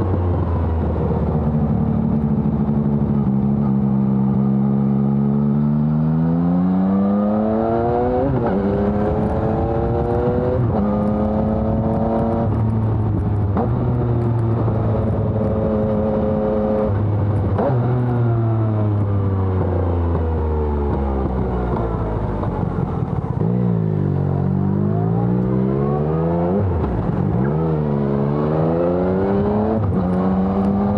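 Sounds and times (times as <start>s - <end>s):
motorcycle engine accelerating: 0.0s - 30.9s.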